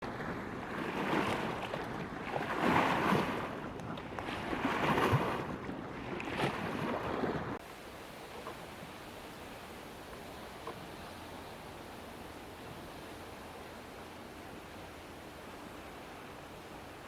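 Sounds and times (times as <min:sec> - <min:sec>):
sea waves washing: 0:00.1 - 0:17.0
faint steady hiss: 0:07.6 - 0:17.0.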